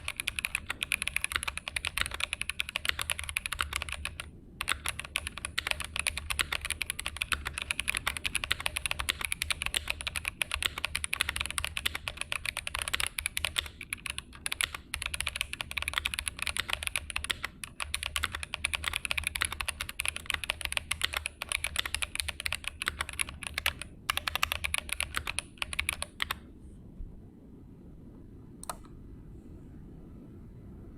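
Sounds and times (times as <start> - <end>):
fast typing on mechanical keyboard: 0.0 - 26.4.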